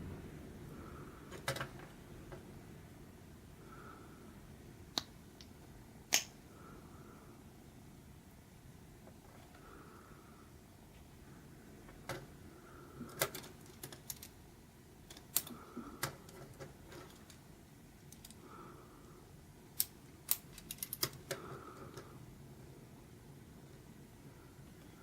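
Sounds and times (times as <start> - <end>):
plastic pieces clicking together: 13.1 - 14.4, 15.1 - 17.4, 18.0 - 18.4, 19.8 - 21.4.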